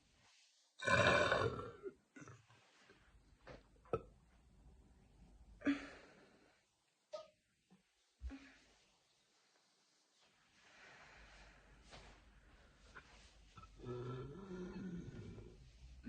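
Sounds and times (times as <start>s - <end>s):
woman burping: 0.8s - 2.4s
quiet breaths: 5.1s - 7.0s, 7.8s - 16.0s.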